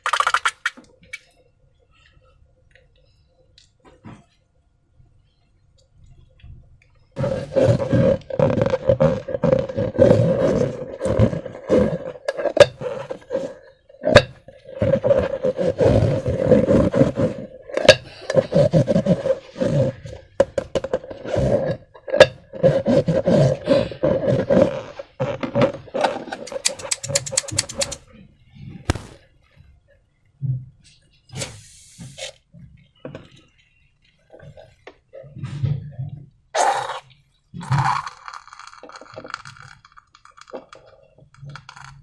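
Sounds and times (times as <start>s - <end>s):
wet slime squelching: 0.0s - 1.2s, 26.4s - 28.0s
rubbery balloon squeak: 7.2s - 13.4s, 22.6s - 27.9s.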